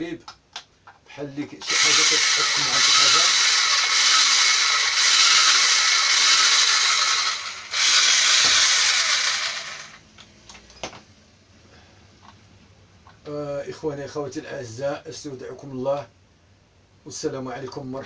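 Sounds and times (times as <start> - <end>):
electric grinder whirring: 1.6 - 10.0.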